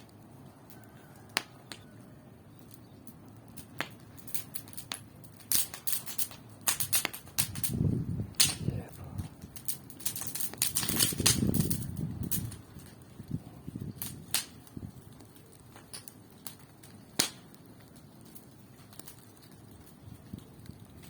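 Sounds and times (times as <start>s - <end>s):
bonfire crackling: 0.0s - 21.0s.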